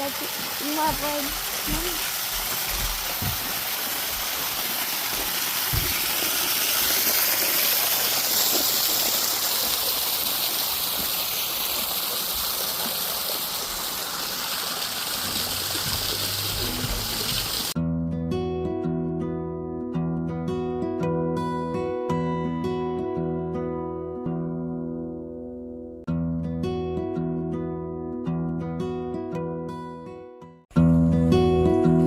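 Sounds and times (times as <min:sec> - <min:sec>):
water rushing: 0:00.0 - 0:17.8.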